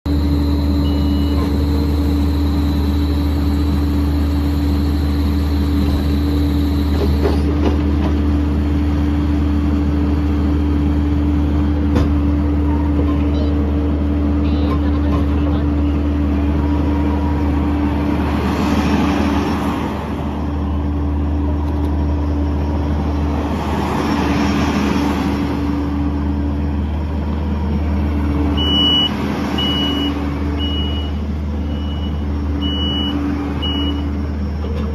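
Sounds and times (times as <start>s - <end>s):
diesel engine running: 0.0s - 34.9s
reversing alarm beeps: 0.2s - 7.4s, 28.6s - 34.1s.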